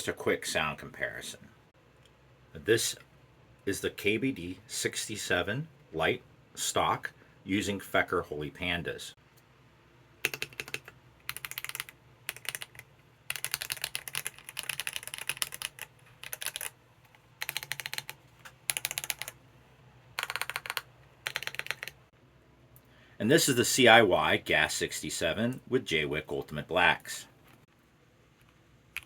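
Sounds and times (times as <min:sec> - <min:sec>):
mechanical keyboard keystroke clicks: 0:10.2 - 0:16.7, 0:17.4 - 0:19.4, 0:20.2 - 0:22.0.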